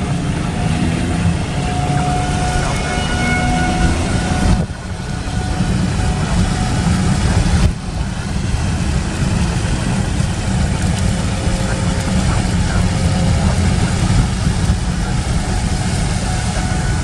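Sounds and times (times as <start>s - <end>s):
loud low rumble: 0.0s - 17.0s
warning siren steady tone: 0.6s - 7.8s, 11.2s - 17.0s.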